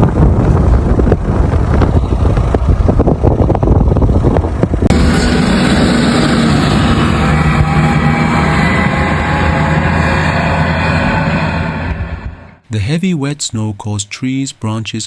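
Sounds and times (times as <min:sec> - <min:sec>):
wind buffeting microphone: 0:00.0 - 0:10.4
vehicle-like hum with low tones: 0:00.0 - 0:12.6
rough low rumble: 0:00.0 - 0:12.7.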